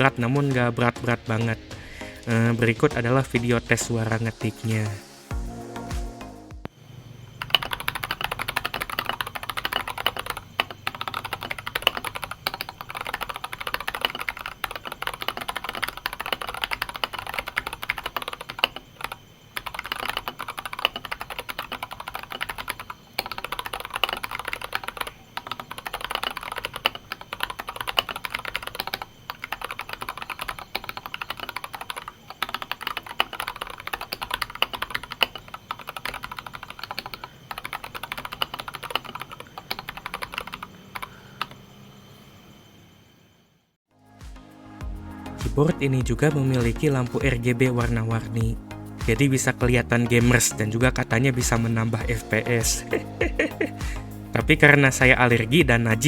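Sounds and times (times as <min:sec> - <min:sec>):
fast typing on mechanical keyboard: 0:07.4 - 0:41.5.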